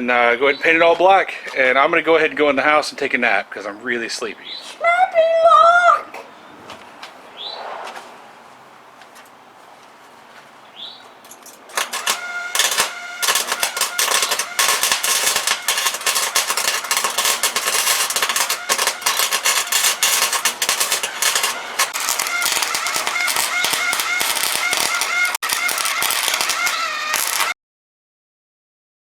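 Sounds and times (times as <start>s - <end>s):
welder crackling on sheet metal: 11.5s - 27.6s.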